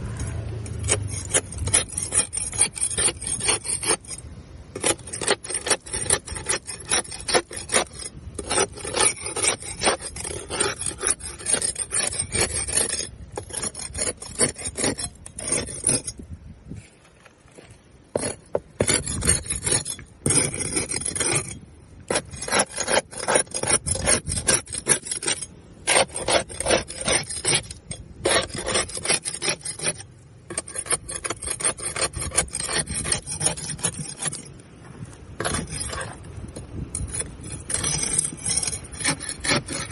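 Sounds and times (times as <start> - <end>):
rasping scraping on boat hull: 0.0 - 39.9.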